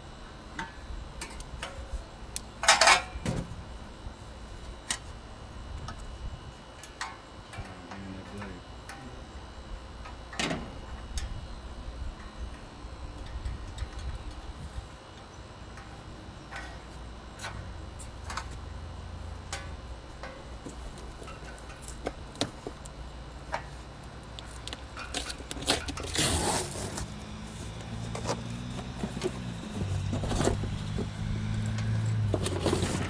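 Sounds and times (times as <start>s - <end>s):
low hum: 15.7s - 33.0s
scraping rustle: 24.5s - 33.0s.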